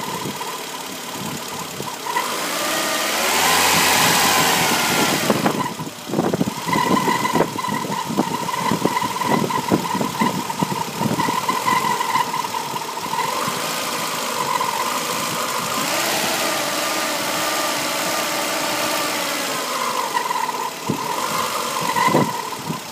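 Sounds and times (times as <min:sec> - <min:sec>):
engine knocking: 0:00.0 - 0:02.3
car engine running at low revs: 0:00.0 - 0:22.9
high engine whine: 0:00.0 - 0:22.9.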